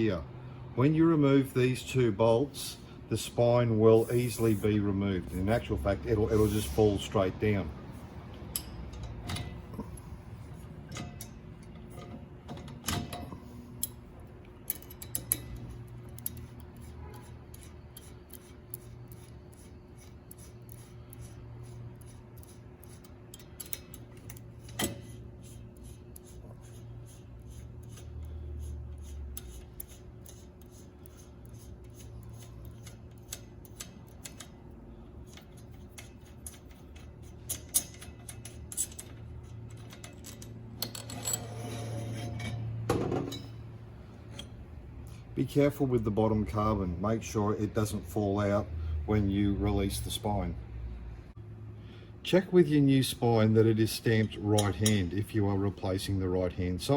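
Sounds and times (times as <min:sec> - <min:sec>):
steady low hum: 0:00.0 - 0:56.9
allen key metallic clicks: 0:10.8 - 0:16.8, 0:22.0 - 0:25.1, 0:32.4 - 0:41.4.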